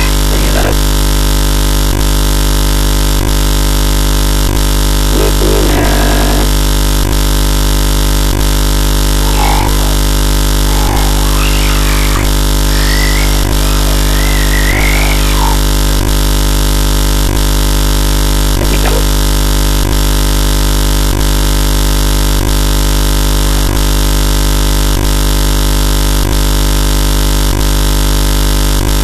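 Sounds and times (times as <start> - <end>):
electrical hum and buzz: 0.0 - 1.9, 4.3 - 19.4
faint wavering sounds: 9.1 - 15.8.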